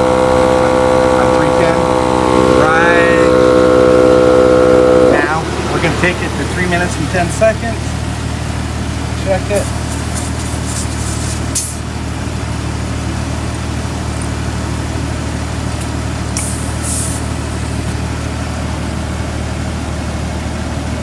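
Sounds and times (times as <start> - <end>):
low motor hum: 0.0 - 21.0
short sharp air hisses: 9.6 - 11.9, 16.4 - 18.0.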